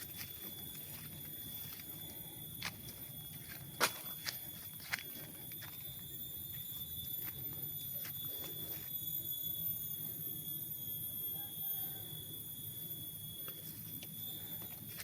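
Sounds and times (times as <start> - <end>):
high-pitched insect chorus: 0.0 - 15.0
faint footstep clicks: 2.6 - 6.0.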